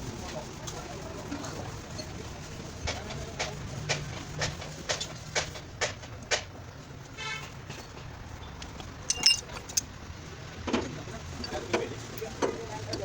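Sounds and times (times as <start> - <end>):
metallic clank: 9.0 - 9.8.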